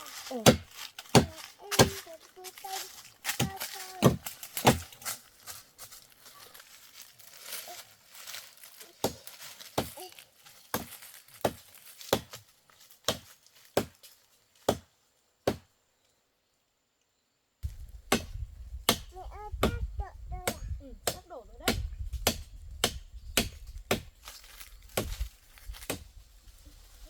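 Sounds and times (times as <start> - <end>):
rustling leaves and branches: 0.0 - 16.6, 17.6 - 27.0.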